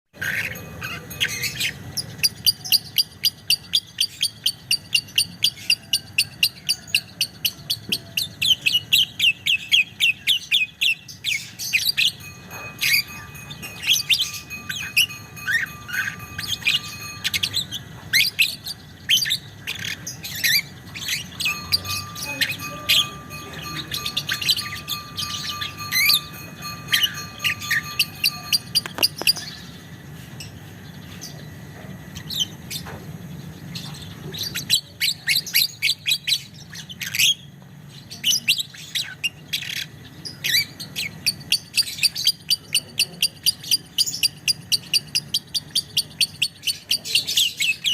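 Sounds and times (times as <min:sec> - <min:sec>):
bird chirps and squeaks: 0:00.2 - 0:29.7
lovebird chattering: 0:00.2 - 0:29.8, 0:38.1 - 0:47.9.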